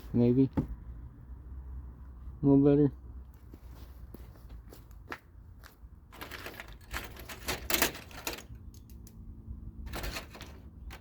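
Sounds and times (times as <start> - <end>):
metal hand tools clattering: 6.2 - 9.0, 9.9 - 11.0.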